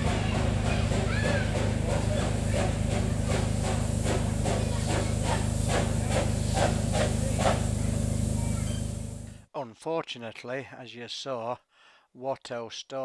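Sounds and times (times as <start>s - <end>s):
steam hissing: 0.0s - 9.4s
steam locomotive chuffing: 0.0s - 9.4s.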